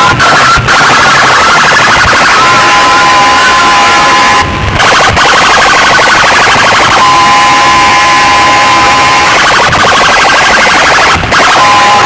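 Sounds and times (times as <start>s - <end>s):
electronic siren-like alarm warble: 0.0s - 12.0s
steady two-note tone: 7.0s - 9.3s.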